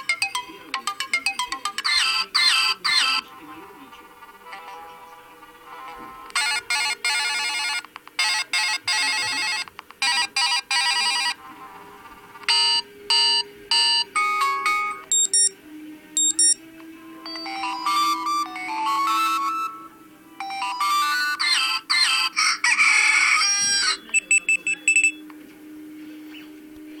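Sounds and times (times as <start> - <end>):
electronic chimes and beeps: 12.5 - 15.6, 16.2 - 16.6, 24.0 - 25.2
rooster crow: 21.4 - 24.0
faint hum: 24.0 - 27.0.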